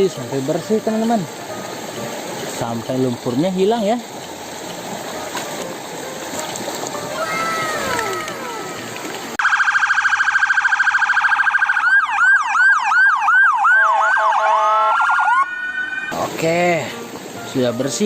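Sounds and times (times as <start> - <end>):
electronic police siren: 9.4 - 16.1
falling whistle glides: 13.6 - 16.1.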